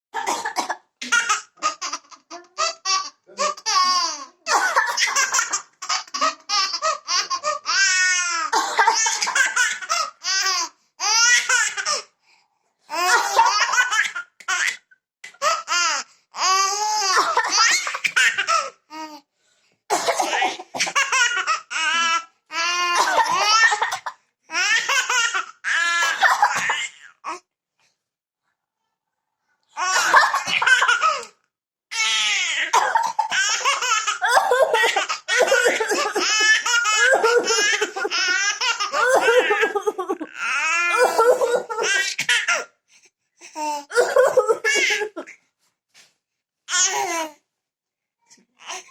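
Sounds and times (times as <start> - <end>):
woman coughing: 0.2 - 1.3, 4.5 - 5.3, 8.6 - 9.4, 19.9 - 21.0, 32.8 - 33.3, 35.4 - 36.4, 37.0 - 38.1, 39.0 - 40.2, 40.9 - 42.0, 43.9 - 45.3
baby laughing: 1.0 - 12.0, 20.2 - 27.0, 29.8 - 31.3, 32.1 - 42.6, 43.9 - 45.3.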